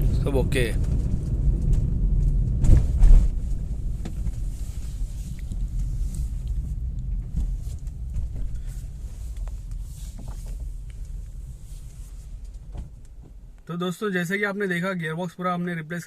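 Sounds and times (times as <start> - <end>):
car engine and road rumble: 0.0 - 16.0.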